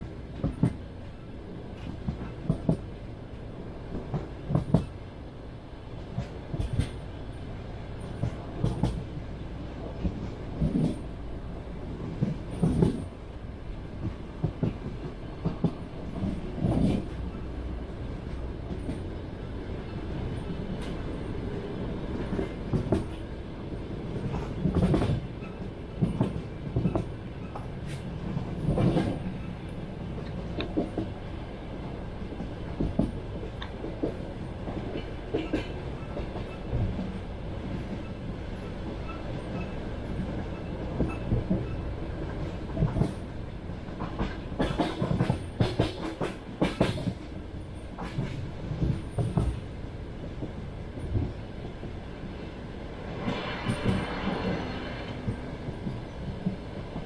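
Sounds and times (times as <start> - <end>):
railway carriage rumble: 0.0 - 57.0
train wheels clattering over rail joints: 0.4 - 0.9, 1.8 - 3.0, 3.9 - 5.0, 6.0 - 7.1, 8.0 - 9.2, 9.9 - 11.2, 12.0 - 13.2, 14.0 - 17.5, 22.2 - 23.3, 24.1 - 31.2, 32.2 - 49.7.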